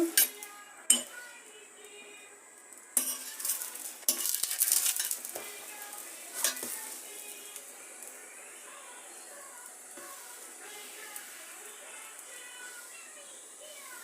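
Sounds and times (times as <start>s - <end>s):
pancake sizzling: 0.0s - 14.0s
utensil scraping frying pan: 3.0s - 8.1s.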